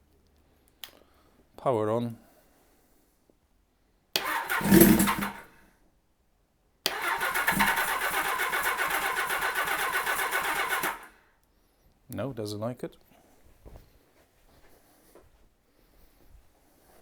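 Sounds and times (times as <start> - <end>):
engine cranking on electric starter: 4.2 - 5.5, 6.9 - 11.1.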